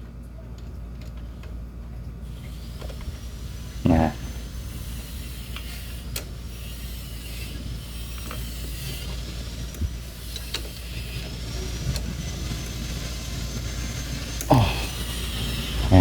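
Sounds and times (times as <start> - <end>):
steady low hum: 1.8 - 10.2, 11.8 - 16.0.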